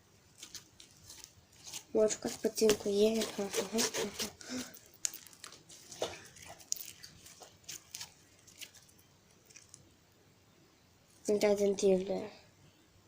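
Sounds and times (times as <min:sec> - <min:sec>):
slime squelching: 0:00.3 - 0:09.9.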